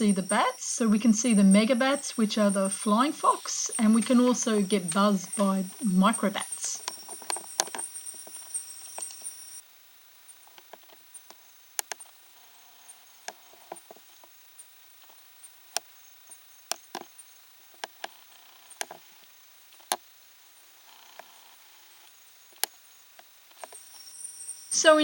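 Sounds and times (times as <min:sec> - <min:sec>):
night insects chorus: 0:00.0 - 0:25.0
sharp clicks and snaps: 0:11.3 - 0:12.0.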